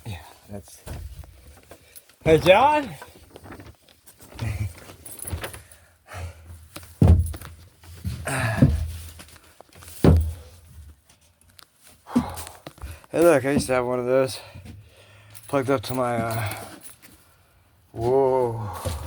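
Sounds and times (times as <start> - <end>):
thumps and clinks: 0.9 - 5.8, 6.6 - 11.0, 12.2 - 17.2
jangling: 4.2 - 5.8, 15.2 - 17.2.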